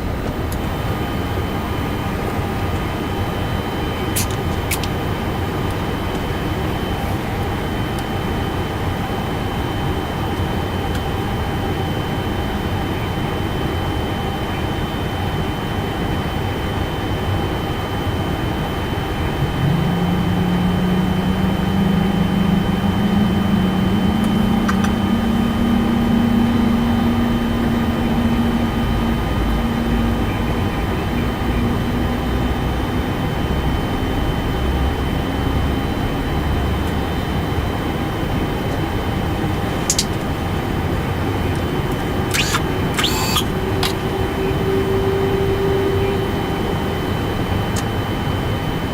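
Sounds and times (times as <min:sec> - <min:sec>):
cockpit hum: 0:00.0 - 0:48.9
jet engine spooling up: 0:18.6 - 0:29.7, 0:42.0 - 0:48.9.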